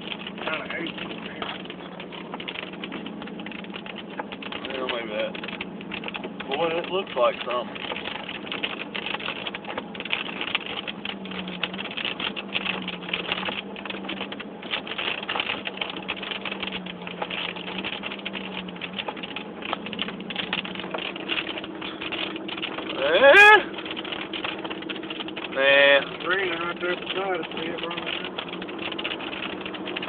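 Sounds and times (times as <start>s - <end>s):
low engine hum: 0.0s - 30.0s
rain pattering against car: 0.0s - 30.0s.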